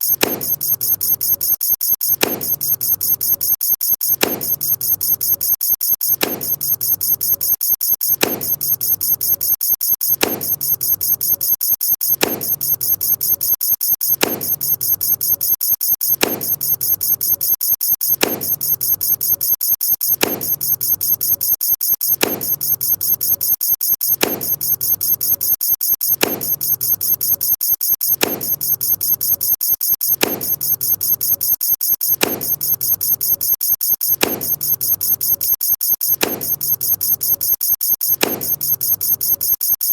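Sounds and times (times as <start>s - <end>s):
rapid high-pitched clicks: 0.0s - 39.9s.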